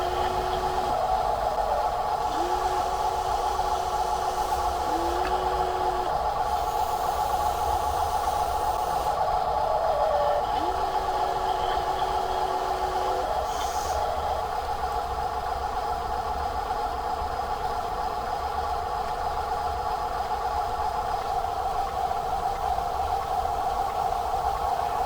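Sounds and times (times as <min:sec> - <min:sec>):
toy truck electric motor whining: 0:00.0 - 0:14.8.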